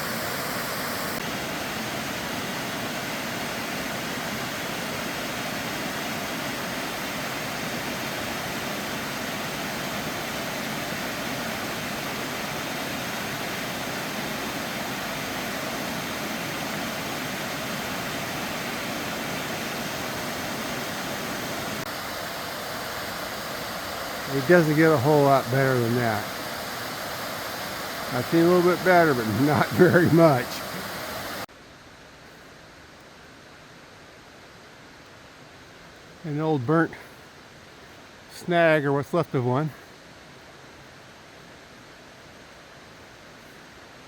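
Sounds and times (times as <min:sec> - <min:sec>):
waterfall rushing: 0:00.0 - 0:31.5.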